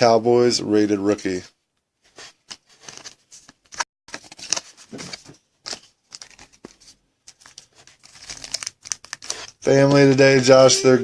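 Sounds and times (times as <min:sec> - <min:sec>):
card packaging crinkling: 0:02.2 - 0:10.6.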